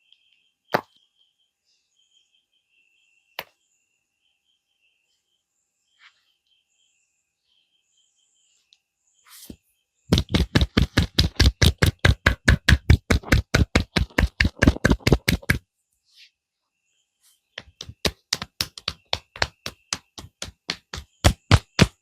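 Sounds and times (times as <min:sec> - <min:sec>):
hand strikes of head massage: 0:10.1 - 0:15.6, 0:17.6 - 0:22.0.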